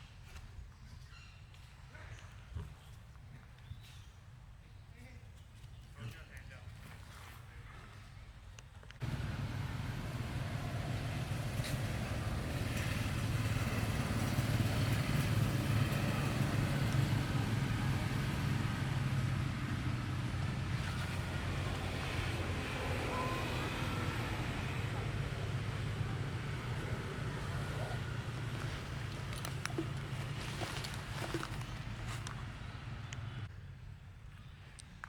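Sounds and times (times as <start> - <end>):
engine rumbling steadily: 9.0 - 33.5.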